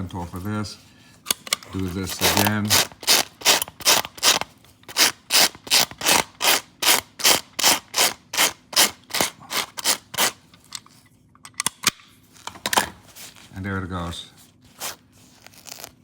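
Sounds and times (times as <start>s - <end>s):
dog brush raking velcro: 1.8s - 10.4s, 14.7s - 16.0s.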